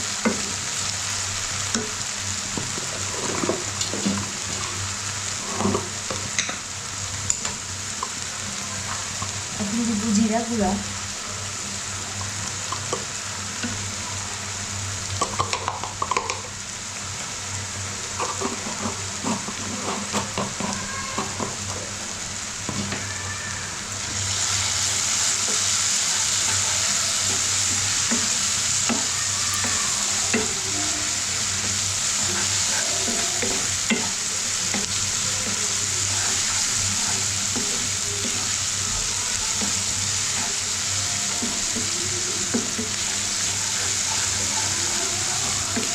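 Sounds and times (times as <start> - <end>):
masala sizzling in a pan: 0.0 - 45.9
spatula scraping a pan: 18.1 - 21.8, 24.1 - 45.9.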